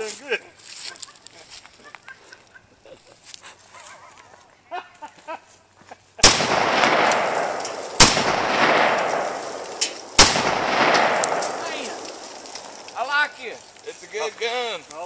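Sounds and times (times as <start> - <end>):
rifle shots with rolling echo: 6.2 - 13.0.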